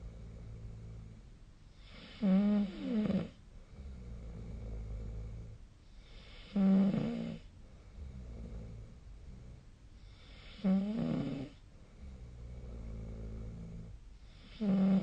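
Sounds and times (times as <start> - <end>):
person snoring: 1.8 - 5.6, 6.2 - 9.6, 10.2 - 15.0.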